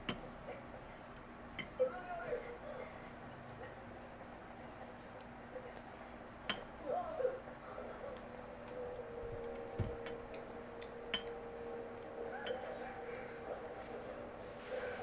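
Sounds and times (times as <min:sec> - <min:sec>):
soft steady hum: 0:00.0 - 0:15.0
utensil clinking against a dish: 0:11.1 - 0:11.4.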